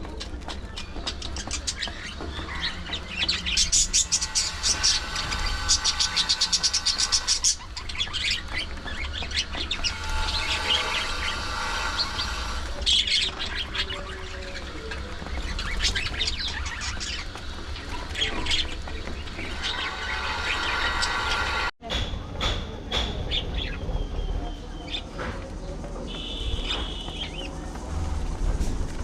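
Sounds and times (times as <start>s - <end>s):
budgerigars chirping and chattering: 0.0s - 21.6s, 23.3s - 23.8s, 24.5s - 25.2s.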